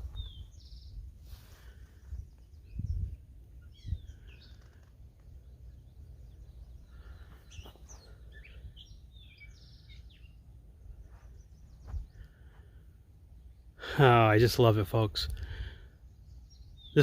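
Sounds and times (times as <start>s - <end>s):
small birds chirping: 0.0s - 17.0s
wind rumble on microphone: 2.0s - 4.5s, 10.9s - 12.2s.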